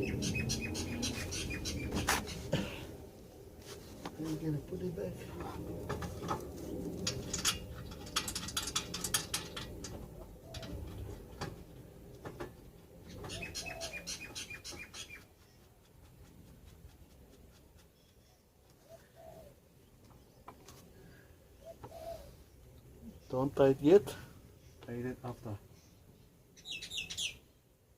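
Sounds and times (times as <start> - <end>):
dove cooing: 9.6 - 11.2, 13.1 - 15.2, 18.8 - 19.6, 21.6 - 23.2.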